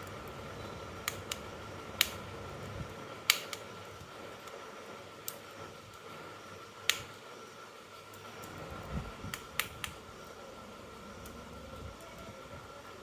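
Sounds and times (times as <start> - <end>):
faint steady hum: 0.0 - 13.0
sharp clicks: 1.0 - 3.7, 6.8 - 7.2, 9.3 - 10.4.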